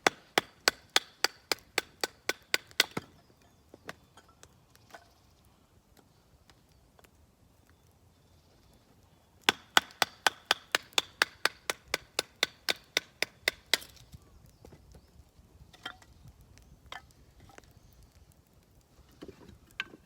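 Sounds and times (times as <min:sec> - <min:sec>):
chopping strikes on wood: 0:00.0 - 0:03.1, 0:09.5 - 0:14.0.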